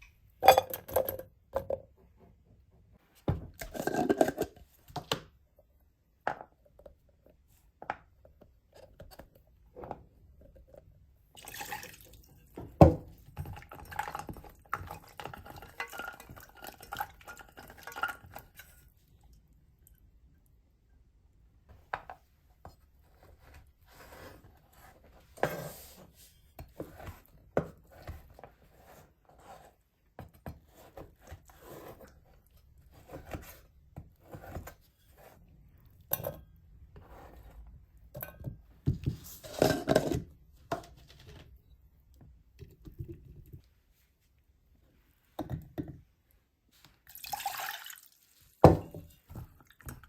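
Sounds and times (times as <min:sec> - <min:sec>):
hard objects tapping and scraping: 0:03.3 - 0:05.3, 0:36.1 - 0:41.5.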